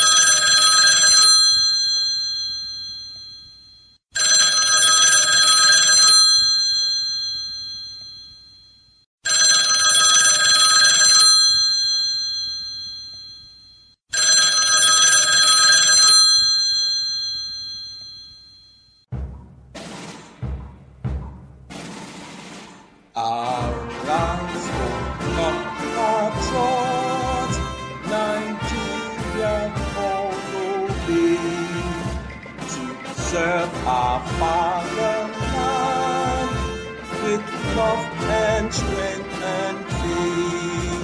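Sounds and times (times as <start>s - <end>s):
electric bell ringing: 0.0s - 19.1s.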